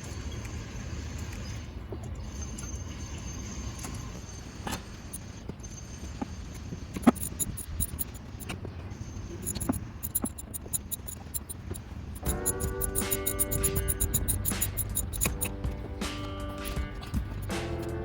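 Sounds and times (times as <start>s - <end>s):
quick light ticks: 7.0s - 8.6s, 9.4s - 15.6s
metal hand tools clinking: 9.4s - 15.5s.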